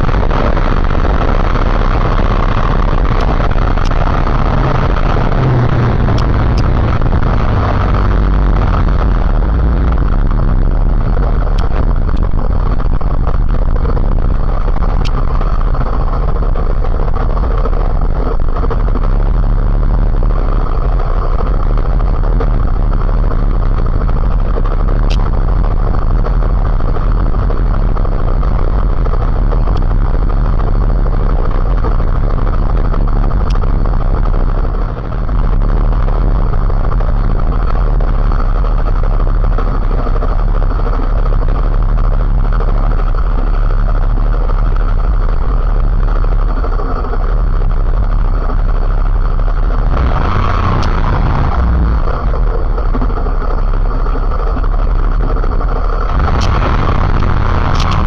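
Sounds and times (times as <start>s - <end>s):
motorcycle engine: 0.0s - 58.0s
rushing wind noise: 0.0s - 58.0s.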